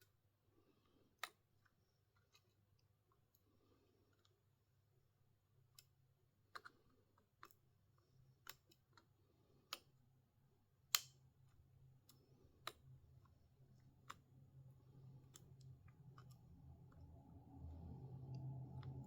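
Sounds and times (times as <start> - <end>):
faint low hum: 0.0 - 19.0
small tool clicks and taps: 10.9 - 11.2, 12.0 - 13.4.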